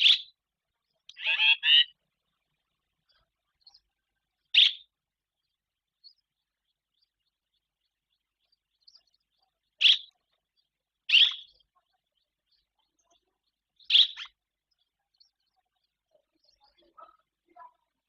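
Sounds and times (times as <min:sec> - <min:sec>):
swallow chirping: 0:00.9 - 0:17.2.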